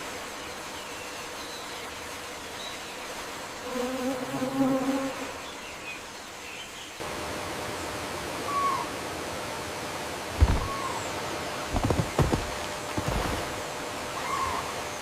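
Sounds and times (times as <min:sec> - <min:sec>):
outdoor hiss: 0:00.0 - 0:15.0
flying insect buzzing: 0:03.6 - 0:05.4
faint bird chirps: 0:10.4 - 0:11.2.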